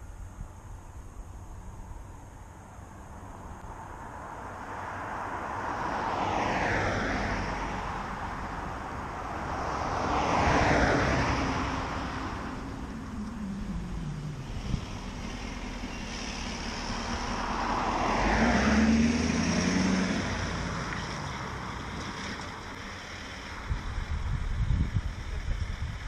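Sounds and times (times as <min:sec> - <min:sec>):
car driving past: 0:03.8 - 0:24.4.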